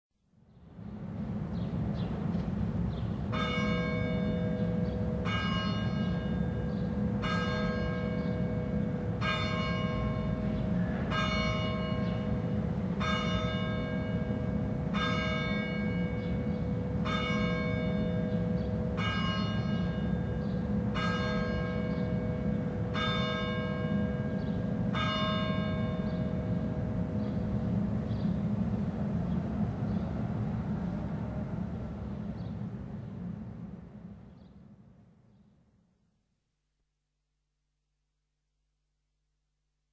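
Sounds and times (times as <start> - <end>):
church bell tolling: 3.4 - 27.6.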